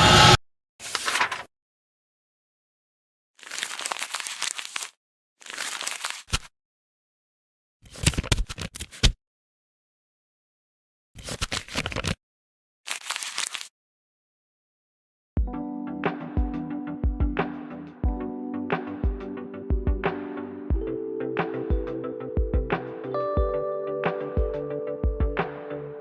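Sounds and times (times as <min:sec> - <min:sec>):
sharp hit: 0:00.0 - 0:00.4
crackling crumpling bursts: 0:03.4 - 0:06.4, 0:12.9 - 0:13.7.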